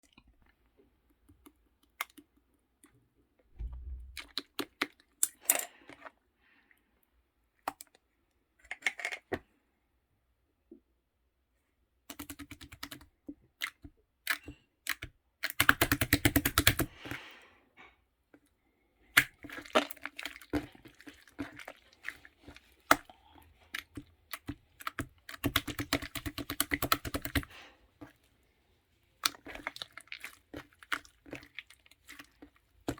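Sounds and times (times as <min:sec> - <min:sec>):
slime squishing and popping: 0:19.2 - 0:28.2.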